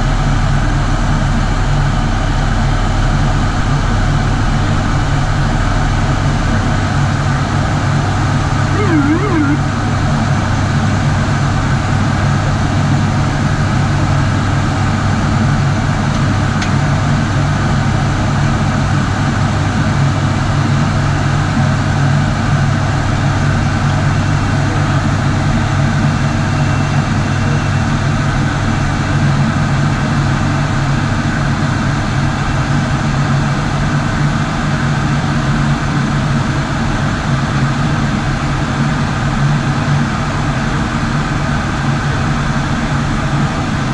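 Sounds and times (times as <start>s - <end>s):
low propeller hum: 0.0s - 43.9s.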